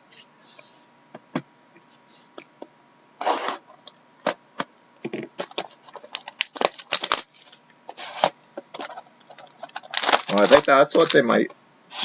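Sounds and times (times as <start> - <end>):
packaging rustling: 5.4 - 11.3.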